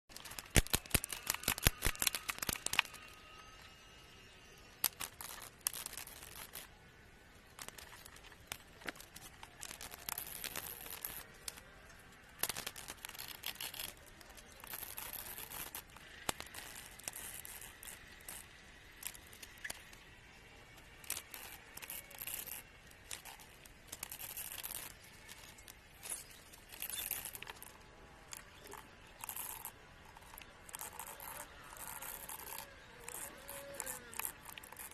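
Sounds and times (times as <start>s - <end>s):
packaging rustling and tearing: 0.1s - 3.2s, 7.6s - 11.6s
sharp clicks: 0.1s - 3.2s.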